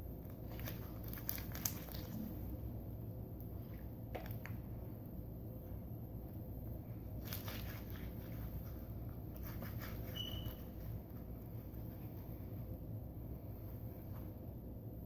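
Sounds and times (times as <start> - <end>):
steady low hum: 0.0 - 15.0
high-pitched squeak: 10.0 - 10.7.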